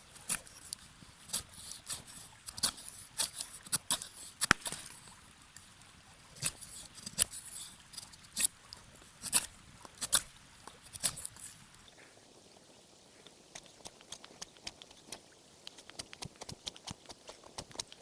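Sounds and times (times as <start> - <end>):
faint steady hiss: 0.0 - 18.0
knife scraping wood: 1.3 - 4.9, 9.2 - 10.3, 13.5 - 18.0.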